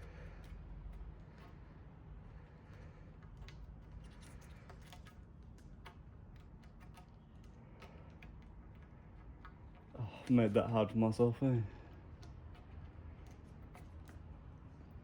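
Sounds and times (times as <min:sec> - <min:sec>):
small irregular clicks: 0:00.0 - 0:15.0
tape rubbing: 0:02.3 - 0:11.0.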